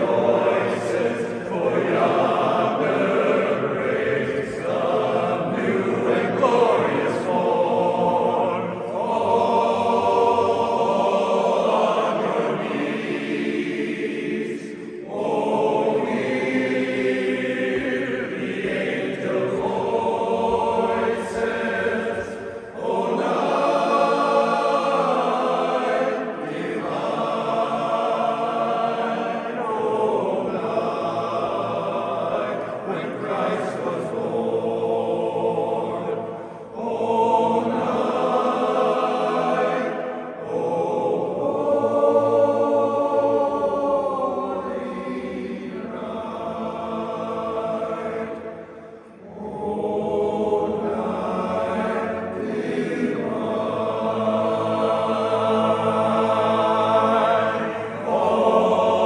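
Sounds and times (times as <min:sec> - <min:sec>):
chorus singing a cappella: 0:00.0 - 0:59.0
singers breathing: 0:22.4 - 0:22.8, 0:36.3 - 0:36.8.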